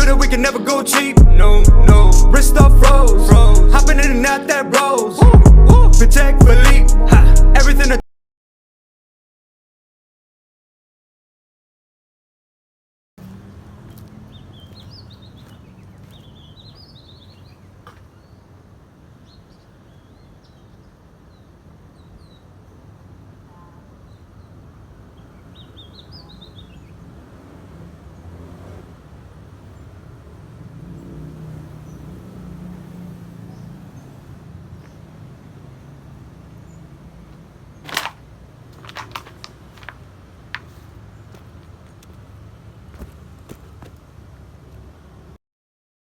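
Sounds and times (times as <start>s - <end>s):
small birds chirping: 13.2s - 27.3s, 29.3s - 44.9s.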